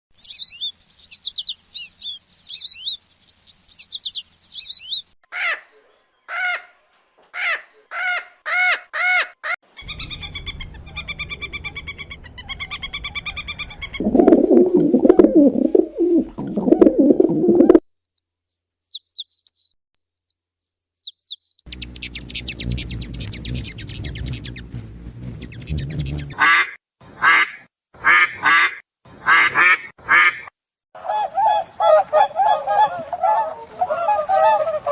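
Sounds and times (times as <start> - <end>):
bird calls: 0.2 - 6.7, 7.4 - 26.4.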